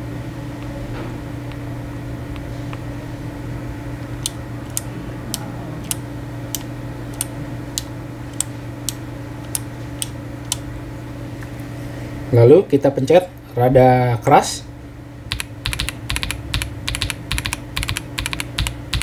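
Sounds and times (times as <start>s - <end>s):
low hum: 0.0s - 12.3s
keyboard keys clicking: 15.3s - 19.0s.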